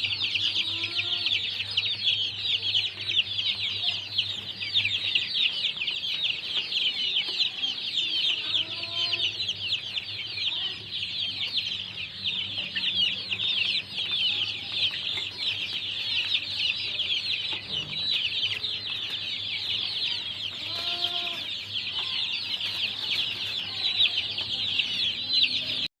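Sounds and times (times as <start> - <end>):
chicks peeping: 0.0 - 25.9.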